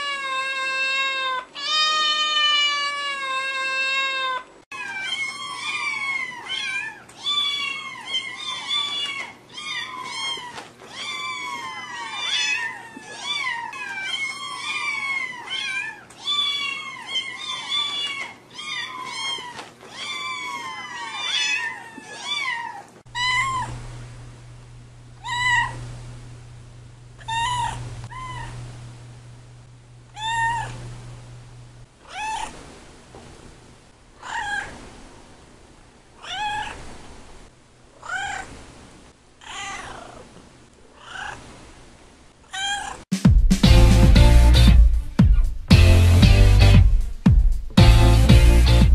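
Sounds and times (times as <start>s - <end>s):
cat meowing: 0.0s - 23.8s, 25.2s - 25.8s, 27.2s - 28.6s, 30.1s - 30.9s, 32.0s - 32.6s, 34.2s - 34.8s, 36.2s - 36.9s, 38.0s - 38.6s, 39.4s - 40.3s, 41.0s - 41.4s, 42.5s - 43.0s
low steady hum: 23.0s - 43.0s.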